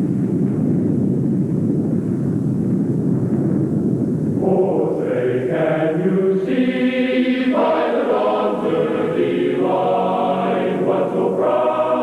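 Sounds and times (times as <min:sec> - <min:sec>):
deep steady rumble: 0:00.0 - 0:12.0
choir singing: 0:04.4 - 0:12.0.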